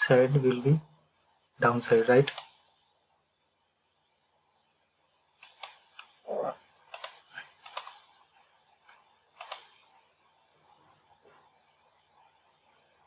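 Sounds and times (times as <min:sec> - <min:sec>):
computer keyboard clicks: 0:09.4 - 0:09.7.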